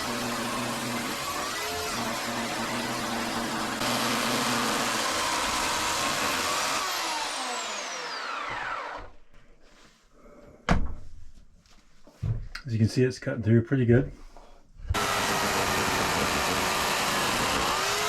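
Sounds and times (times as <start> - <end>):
chainsaw cutting log: 0.0 - 9.1, 14.9 - 18.0.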